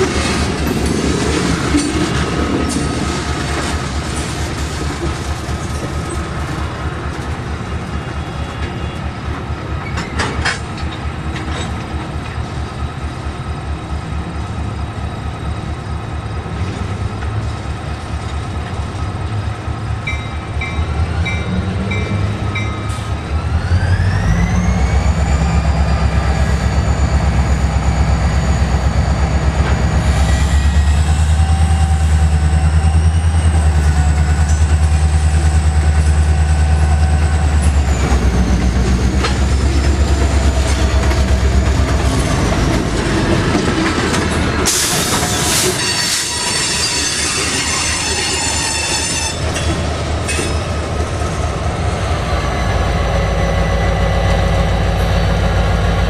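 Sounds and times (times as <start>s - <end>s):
diesel locomotive engine rumbling: 0.0s - 56.0s
rising engine whine: 21.0s - 44.7s.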